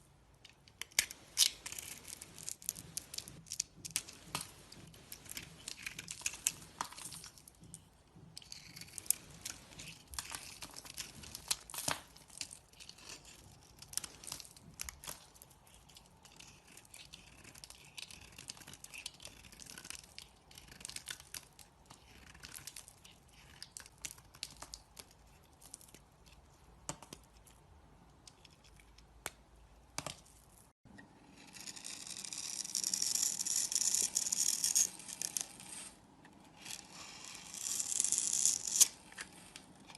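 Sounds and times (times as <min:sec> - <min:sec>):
knife scraping soap: 0:00.8 - 0:26.4, 0:31.0 - 0:39.9.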